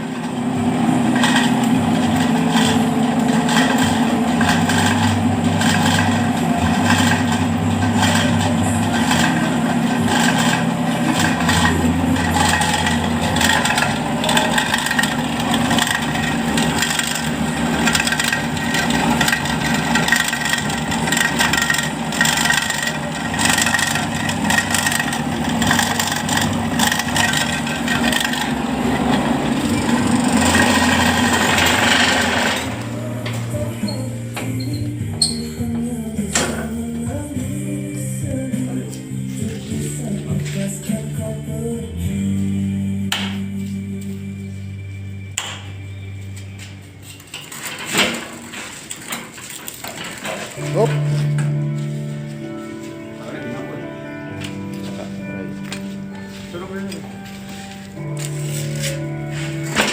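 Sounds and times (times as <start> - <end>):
press machine motor hum: 0.0 - 37.5
metal and concrete rattling: 1.0 - 36.8, 47.0 - 51.6.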